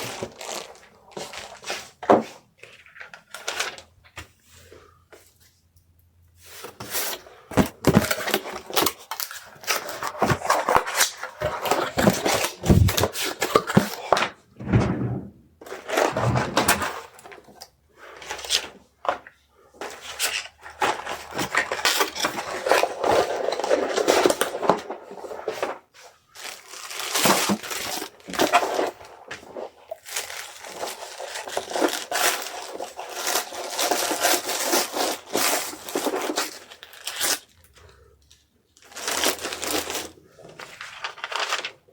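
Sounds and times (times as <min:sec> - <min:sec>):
packing material rustling: 0:00.0 - 0:01.8, 0:07.0 - 0:14.8, 0:26.4 - 0:37.6, 0:38.8 - 0:41.8
low thumps of items set down: 0:14.5 - 0:15.5.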